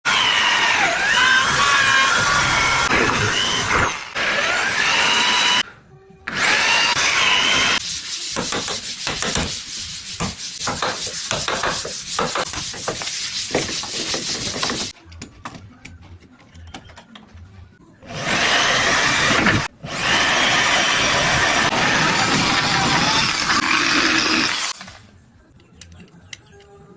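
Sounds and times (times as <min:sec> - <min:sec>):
power tool whining: 0:00.1 - 0:05.6, 0:06.3 - 0:07.8, 0:18.1 - 0:24.8.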